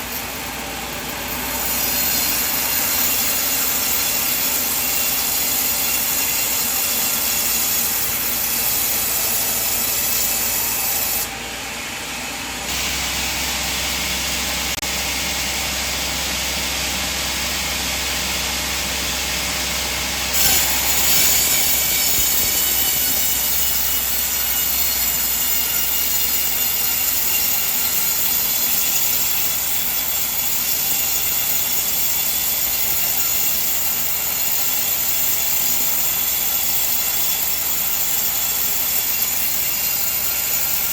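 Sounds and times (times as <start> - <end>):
machine hum: 0.0 - 27.2
band saw cutting log: 0.0 - 40.9
deeper hum: 9.6 - 23.5.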